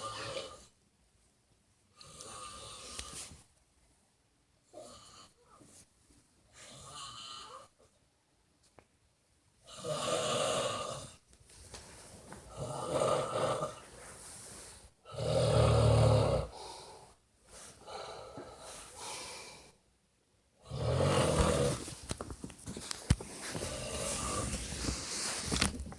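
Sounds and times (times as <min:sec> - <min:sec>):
person snoring loudly: 0:09.7 - 0:11.2, 0:12.5 - 0:13.8, 0:15.1 - 0:16.6, 0:20.6 - 0:21.9
faint breaths: 0:16.4 - 0:19.9, 0:22.7 - 0:25.7.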